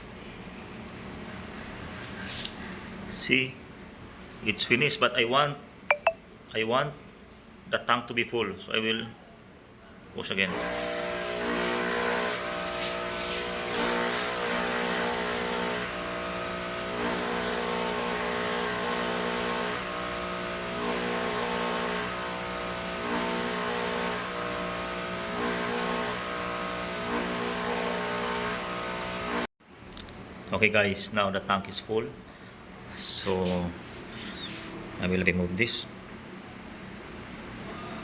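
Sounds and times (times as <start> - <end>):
water pump buzzing hum: 10.5 - 29.5.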